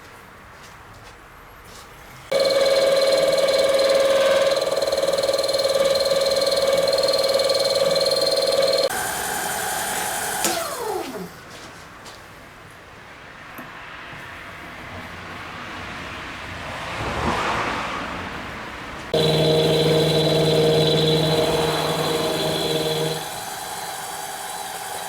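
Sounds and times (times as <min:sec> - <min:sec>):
electric motor whining: 0:02.3 - 0:11.3, 0:19.2 - 0:25.0.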